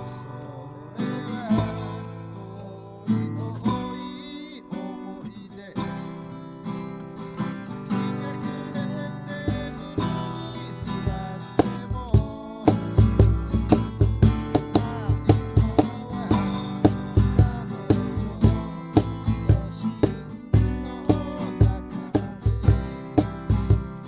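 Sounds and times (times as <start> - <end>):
acoustic guitar strumming chords: 0.0 - 24.0.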